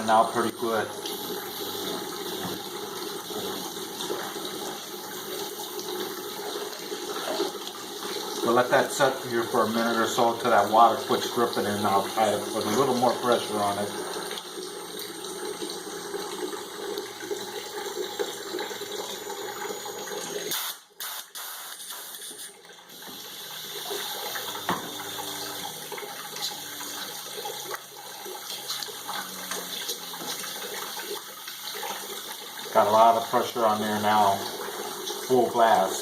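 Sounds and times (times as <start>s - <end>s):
water running and dripping: 0.0s - 36.0s.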